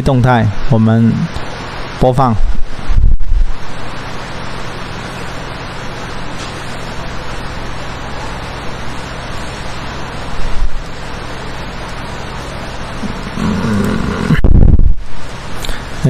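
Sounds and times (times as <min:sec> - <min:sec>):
low even hum: 0:00.0 - 0:16.0
steady background hiss: 0:00.0 - 0:16.0.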